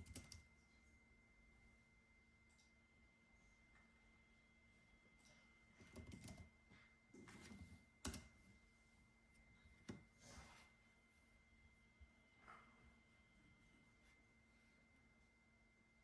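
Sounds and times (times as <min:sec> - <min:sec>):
keyboard typing: 0:00.0 - 0:00.5, 0:05.8 - 0:06.5, 0:07.4 - 0:08.4
faint high whine: 0:08.6 - 0:16.0.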